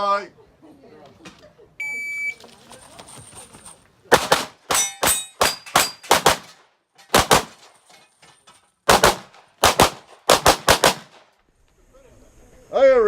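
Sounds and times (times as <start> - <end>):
pistol shots: 4.1 - 7.7, 8.9 - 11.3
metallic ring of steel targets: 4.7 - 6.2.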